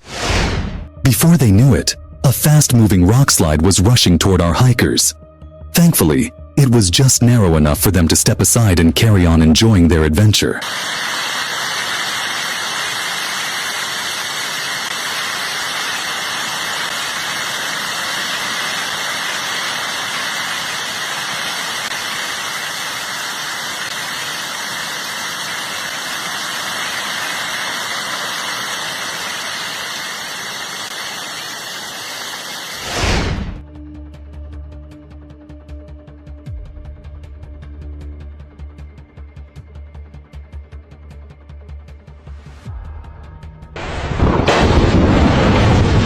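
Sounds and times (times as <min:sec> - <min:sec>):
faint steady whine: 0:05.8 - 0:32.9
loud rushing hiss: 0:10.6 - 0:33.6.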